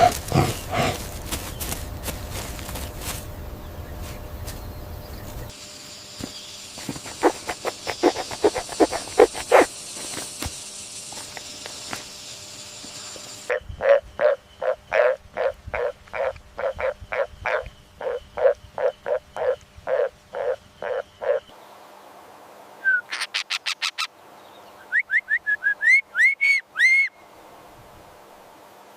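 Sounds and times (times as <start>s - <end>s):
animal calls: 0.0s - 1.2s, 6.9s - 9.7s, 13.5s - 21.5s.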